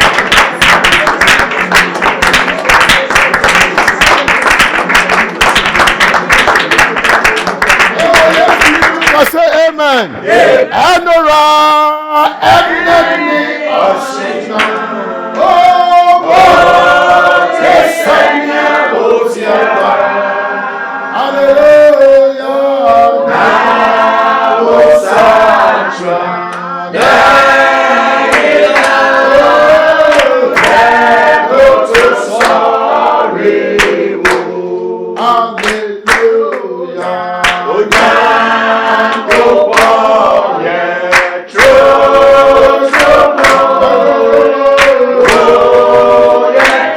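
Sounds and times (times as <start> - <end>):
group singing in chorus: 10.2 - 46.9.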